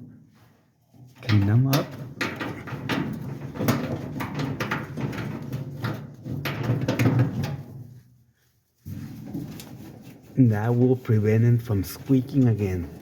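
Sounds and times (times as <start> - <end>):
rag scrubbing a wheel: 8.9 - 13.0.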